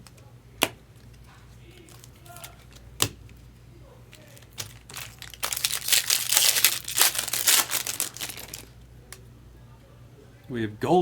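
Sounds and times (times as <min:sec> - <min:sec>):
foil wrapper tearing and crinkling: 0:01.7 - 0:02.8, 0:04.1 - 0:08.7.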